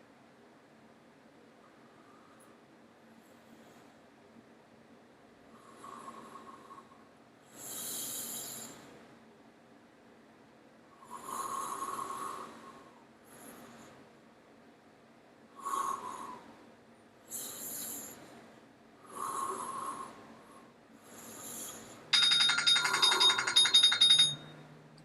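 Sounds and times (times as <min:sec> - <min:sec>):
man breathing deeply: 0:11.0 - 0:13.9, 0:15.6 - 0:16.6, 0:19.0 - 0:22.1.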